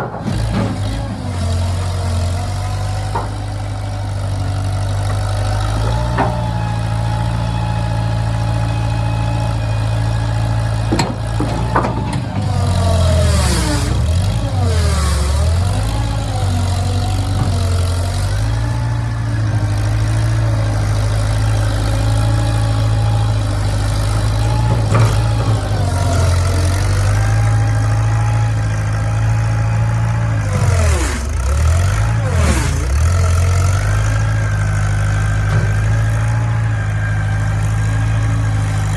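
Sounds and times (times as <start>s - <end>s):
engine running: 0.0s - 38.9s.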